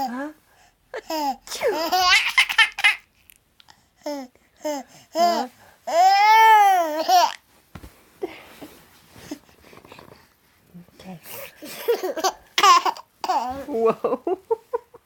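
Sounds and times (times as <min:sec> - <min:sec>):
baby giggling and babbling: 0:01.0 - 0:03.1, 0:04.0 - 0:07.4, 0:11.6 - 0:13.7.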